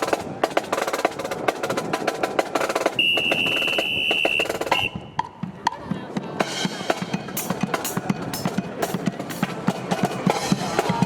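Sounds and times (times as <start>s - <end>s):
marching band playing: 0.0s - 11.0s.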